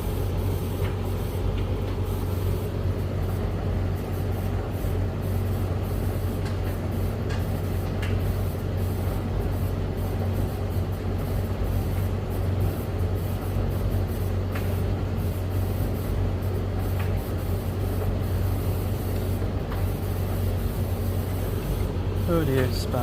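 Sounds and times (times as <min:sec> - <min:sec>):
tumble dryer running: 0:00.0 - 0:05.3, 0:17.7 - 0:23.0
washing machine running: 0:00.0 - 0:23.0.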